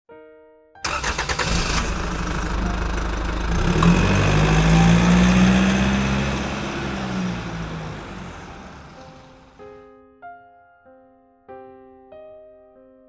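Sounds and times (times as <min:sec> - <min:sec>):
engine revving: 0:00.9 - 0:09.6.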